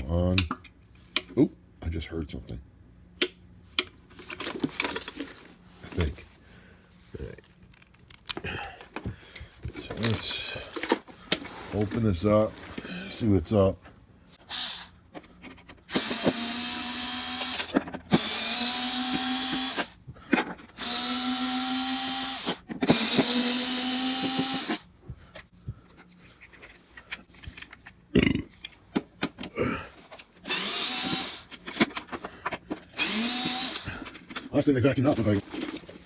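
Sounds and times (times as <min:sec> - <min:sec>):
power drill spinning: 0:14.4 - 0:15.0, 0:15.9 - 0:20.0, 0:20.7 - 0:24.9, 0:30.4 - 0:35.8.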